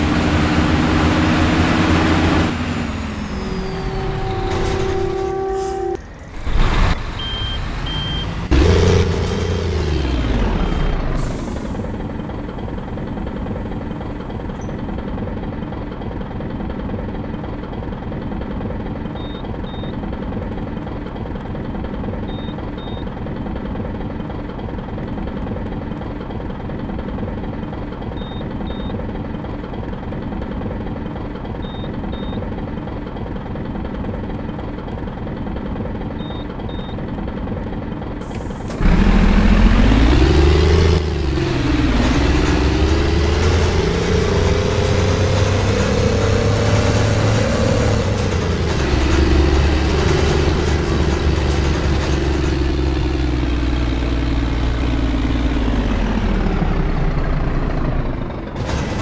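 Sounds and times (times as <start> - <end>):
bus engine revving: 0.0 - 15.5, 37.4 - 59.0
bus diesel engine idling: 0.0 - 59.0
faint double beep: 7.2 - 8.3.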